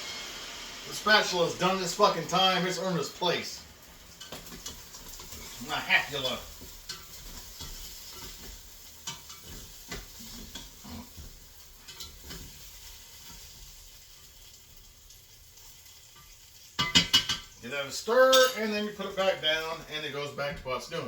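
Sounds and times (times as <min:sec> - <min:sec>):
chicken wings sizzling: 0:00.0 - 0:21.0
spatula scraping and tapping: 0:04.2 - 0:05.6, 0:06.4 - 0:13.6.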